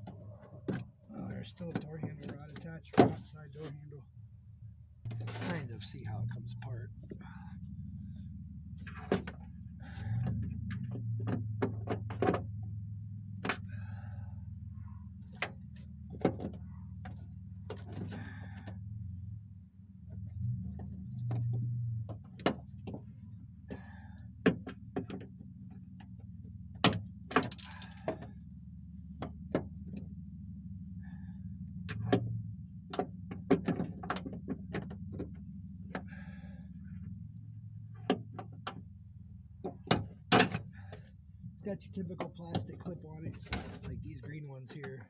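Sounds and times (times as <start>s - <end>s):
low hum: 0.0s - 44.8s.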